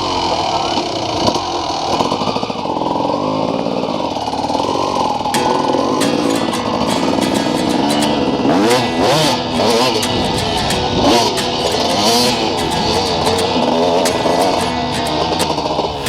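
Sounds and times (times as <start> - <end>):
dirt bike engine revving: 7.0 - 16.0.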